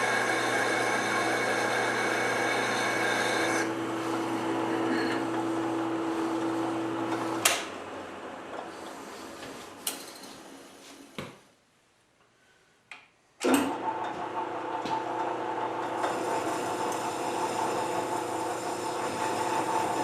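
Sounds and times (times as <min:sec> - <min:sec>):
machine tool motor humming: 0:00.0 - 0:09.2, 0:13.7 - 0:20.0
motor starting with jolt: 0:13.4 - 0:20.0.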